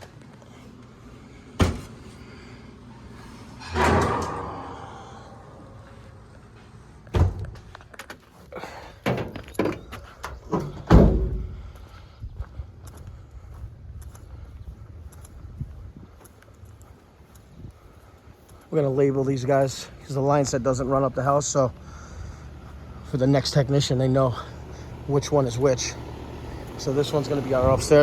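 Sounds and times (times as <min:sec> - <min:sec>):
knocks and thuds: 0:01.6 - 0:02.0, 0:07.1 - 0:07.7.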